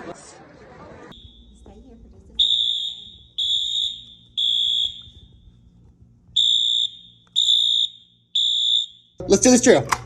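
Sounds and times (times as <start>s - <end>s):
fire alarm beeping: 2.4s - 5.4s, 6.4s - 9.2s.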